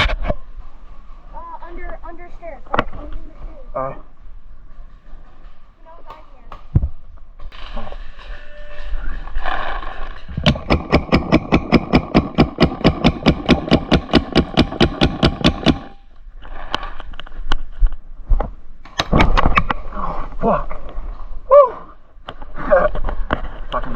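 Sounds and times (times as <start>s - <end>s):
rustling: 0.0s - 23.9s
scattered pops: 9.4s - 16.1s
paintball marker rapid firing: 10.4s - 16.0s, 18.9s - 19.6s.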